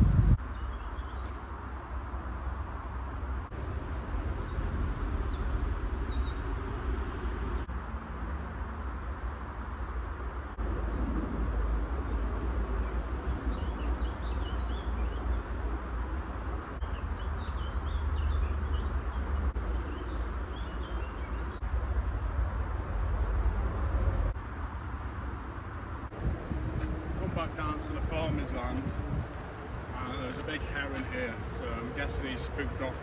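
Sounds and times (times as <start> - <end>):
small birds chirping: 16.8 - 21.6, 26.2 - 33.0.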